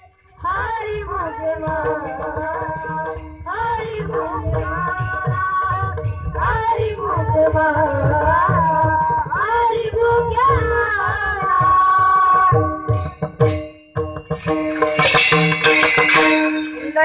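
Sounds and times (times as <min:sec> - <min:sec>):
boy singing: 0:00.4 - 0:13.0, 0:16.2 - 0:17.0
drum strokes: 0:10.6 - 0:17.0
hand cymbals jingling: 0:12.5 - 0:17.0.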